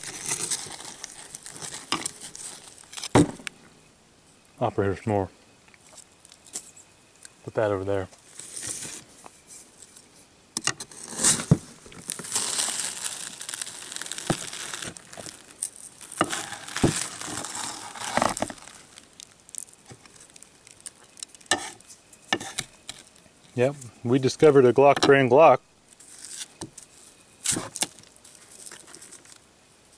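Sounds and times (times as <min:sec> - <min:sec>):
food crinkling and tearing: 0:00.0 - 0:03.2, 0:10.8 - 0:23.5, 0:25.9 - 0:29.5.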